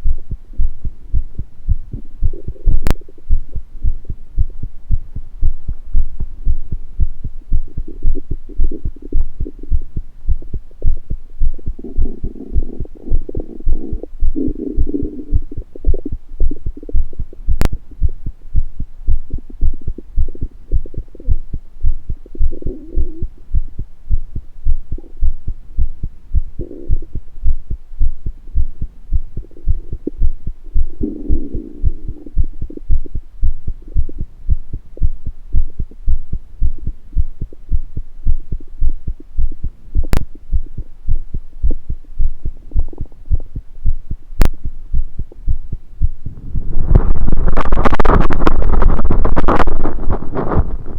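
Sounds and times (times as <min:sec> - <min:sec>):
heartbeat thumps: 0:00.0 - 0:50.9
stomach gurgles: 0:01.9 - 0:03.6, 0:07.6 - 0:18.0, 0:19.1 - 0:23.4, 0:26.5 - 0:27.2, 0:28.8 - 0:36.1, 0:40.0 - 0:45.5, 0:46.2 - 0:50.9.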